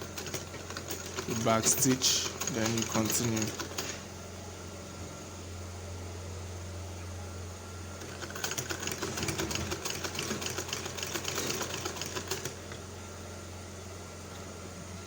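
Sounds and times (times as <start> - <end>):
sewing machine stitching: 0.0 - 4.0, 8.0 - 12.6
low steady hum: 0.0 - 15.0.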